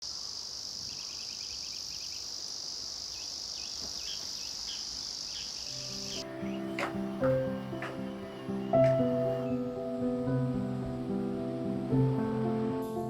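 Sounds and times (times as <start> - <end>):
insect chirps: 0.0 - 13.0
insect chorus: 0.0 - 13.0
gentle music: 5.6 - 13.0.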